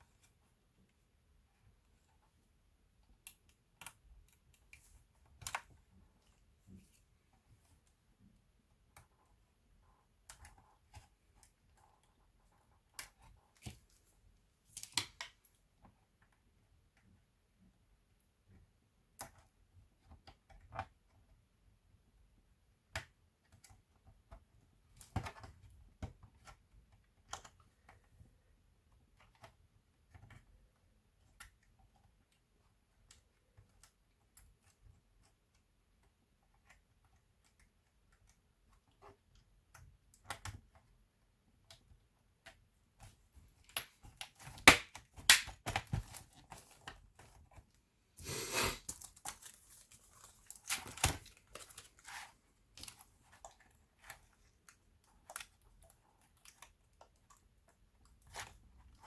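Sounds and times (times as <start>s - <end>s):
hands handling laptop parts: 48.8s - 57.4s.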